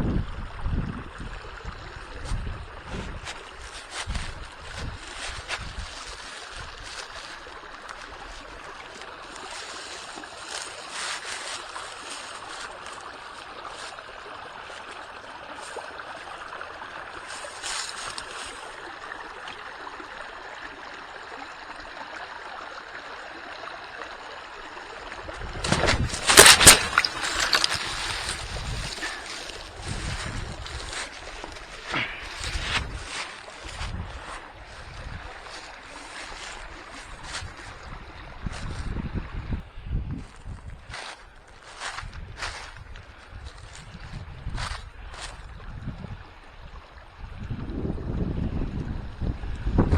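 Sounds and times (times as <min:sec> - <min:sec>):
wind buffeting microphone: 0:00.0 - 0:07.2, 0:25.1 - 0:35.6, 0:36.3 - 0:41.1, 0:41.8 - 0:49.9
creek water running: 0:00.0 - 0:49.9.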